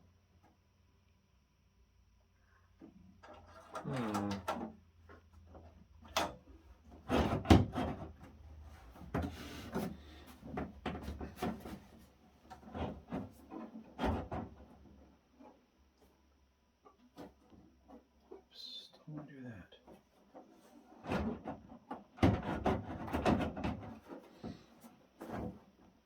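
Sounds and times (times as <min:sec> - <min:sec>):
panels clicking and knocking by hand: 0:02.8 - 0:15.6, 0:19.9 - 0:25.9.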